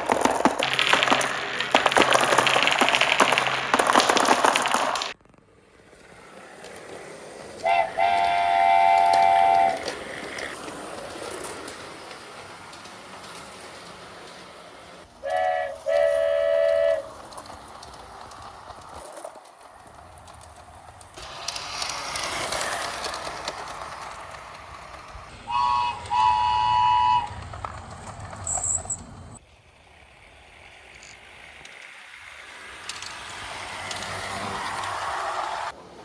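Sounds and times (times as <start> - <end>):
rushing rumbling train noise: 0.0 - 36.0
train horn toots: 7.6 - 10.0, 15.2 - 17.1, 25.4 - 27.7.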